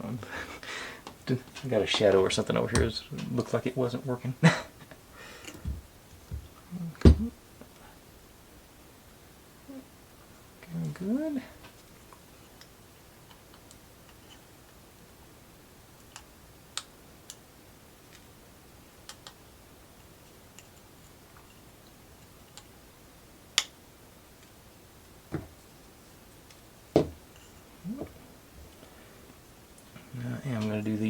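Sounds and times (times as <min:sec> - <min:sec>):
heavy knocks: 0:05.6 - 0:07.3, 0:25.3 - 0:25.6, 0:27.0 - 0:27.2.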